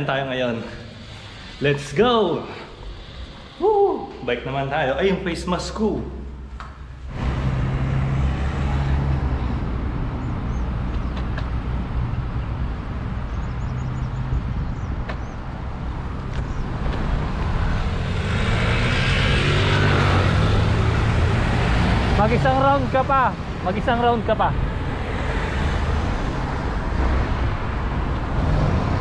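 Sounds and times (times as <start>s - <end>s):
wind rumbling on microphone: 9.1s - 29.0s.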